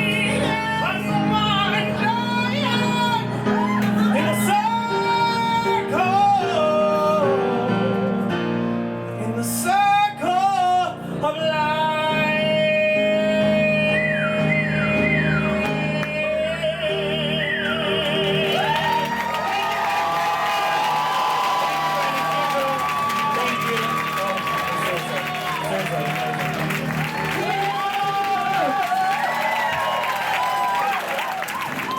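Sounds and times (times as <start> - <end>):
person singing with vibrato: 0.0 - 19.4
piano accompaniment: 0.0 - 31.9.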